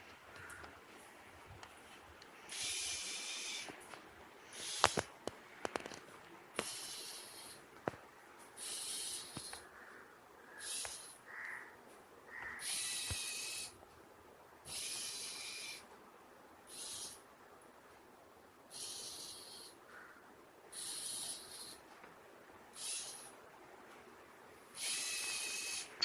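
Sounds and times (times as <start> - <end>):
machine hissing bursts: 2.5 - 3.7, 4.5 - 5.0, 6.6 - 7.6, 8.6 - 9.6, 10.6 - 11.2, 12.6 - 13.7, 14.7 - 15.8, 18.7 - 19.7, 20.7 - 21.8, 22.8 - 23.3, 24.8 - 26.0.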